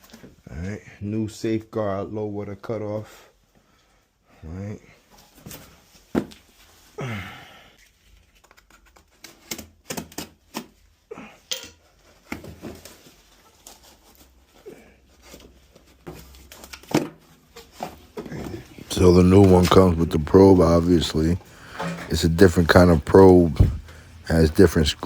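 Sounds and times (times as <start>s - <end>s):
clicks and knocks: 18.5s - 25.0s.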